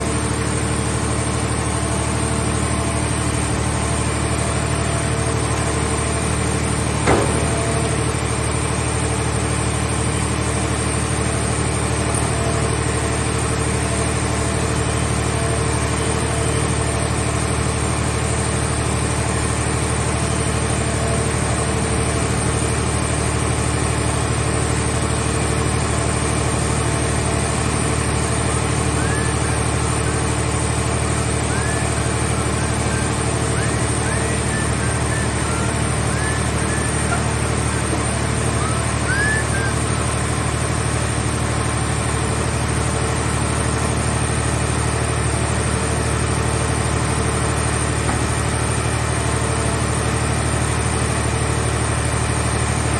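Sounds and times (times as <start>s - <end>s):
machine power unit droning: 0.0s - 52.9s
sharp knock: 7.1s - 7.9s.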